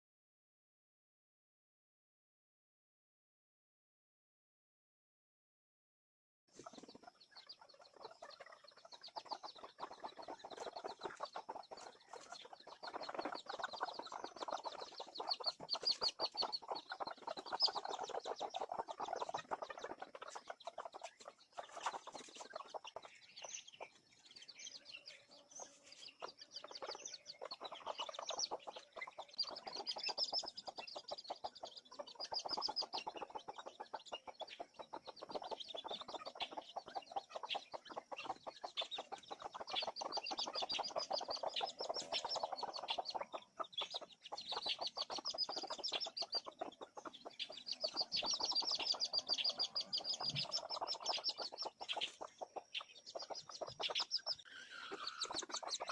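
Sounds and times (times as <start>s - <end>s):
chickens clucking: 6.5s - 55.9s
chicks peeping: 6.5s - 55.9s.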